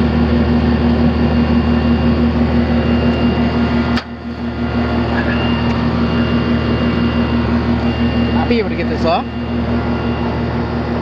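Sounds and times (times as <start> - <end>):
air conditioning unit humming: 0.0 - 11.0.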